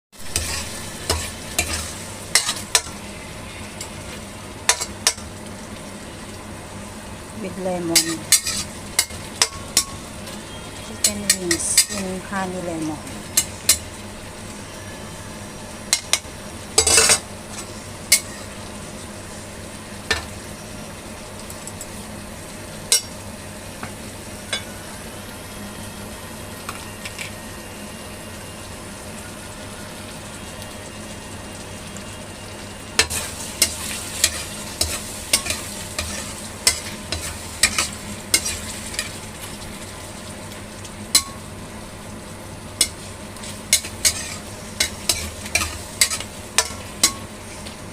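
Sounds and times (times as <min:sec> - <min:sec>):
chicken wings sizzling in a pan: 0:00.2 - 0:47.9
utensil clacking and scraping pan: 0:42.8 - 0:47.2.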